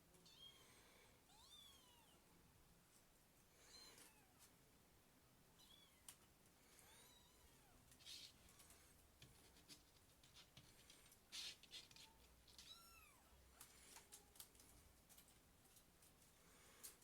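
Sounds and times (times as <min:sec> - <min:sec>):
kitten meowing: 0:11.8 - 0:13.3.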